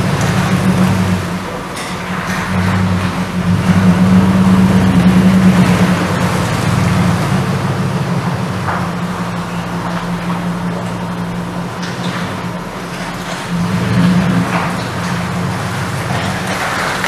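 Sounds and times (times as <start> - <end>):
car engine running: 0.0 - 17.0.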